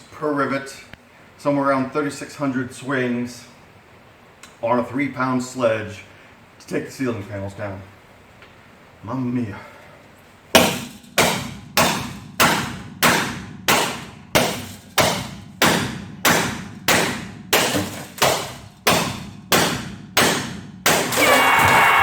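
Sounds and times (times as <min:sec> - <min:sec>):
sledgehammer striking metal: 0:10.6 - 0:22.0.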